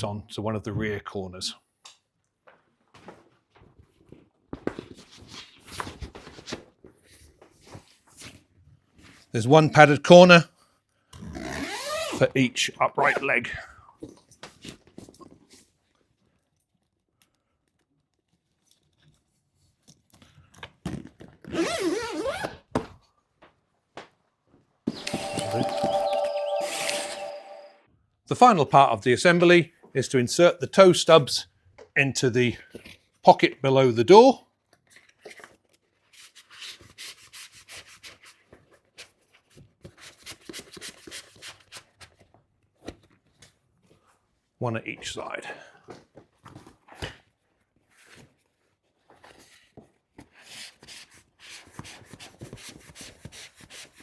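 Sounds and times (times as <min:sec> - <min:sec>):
zip pulled closed: 0:11.2 - 0:12.2, 0:21.5 - 0:22.6
knocks and rustles of handling: 0:45.9 - 0:50.4.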